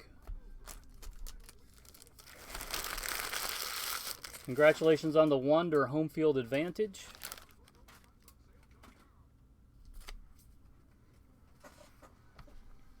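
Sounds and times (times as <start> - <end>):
cards and packaging rustling: 0.6 - 5.4, 6.5 - 9.1.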